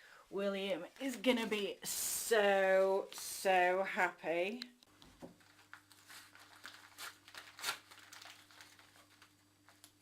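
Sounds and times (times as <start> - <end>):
packaging crinkling and rustling: 5.0 - 10.0.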